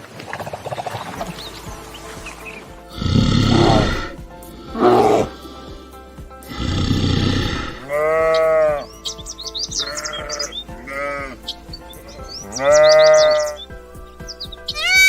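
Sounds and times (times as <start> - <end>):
background music with chirping notes: 0.9 - 15.0
farm animal bleating: 3.0 - 5.4, 6.6 - 8.9, 9.6 - 13.7, 14.7 - 15.0.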